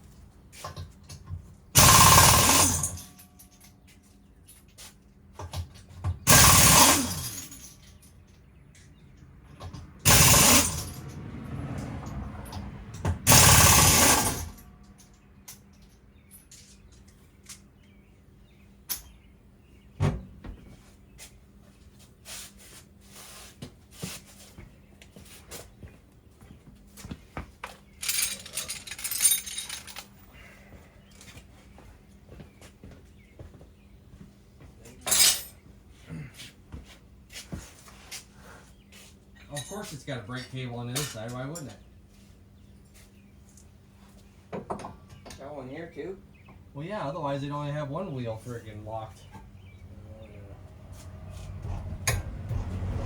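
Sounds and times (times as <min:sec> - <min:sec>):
power tool bursts: 0:01.8 - 0:03.0, 0:06.3 - 0:07.5, 0:10.1 - 0:10.9, 0:13.3 - 0:14.6.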